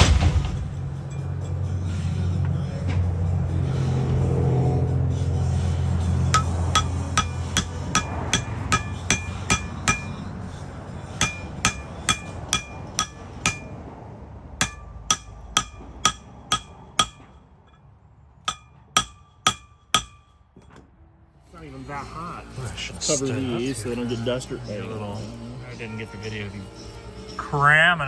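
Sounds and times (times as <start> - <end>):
hammer blows on metal: 6.3 - 13.8, 14.6 - 17.8.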